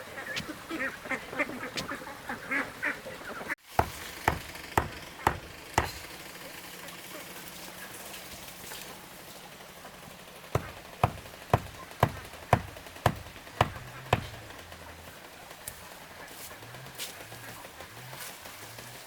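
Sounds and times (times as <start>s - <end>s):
sharp knocks: 3.8s - 6.2s, 10.6s - 14.5s.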